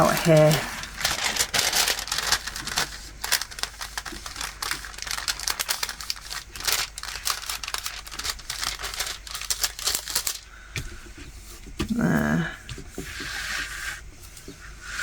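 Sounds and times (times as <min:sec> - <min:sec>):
plastic film crinkling: 0:00.0 - 0:10.6.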